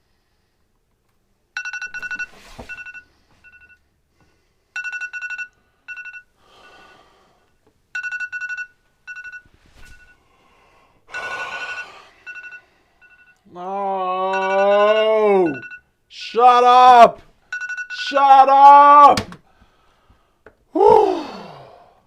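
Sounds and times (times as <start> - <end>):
phone alarm beeping: 1.6 - 3.8, 4.8 - 7.0, 8.0 - 10.2, 11.1 - 13.5, 14.3 - 16.0, 17.4 - 18.5.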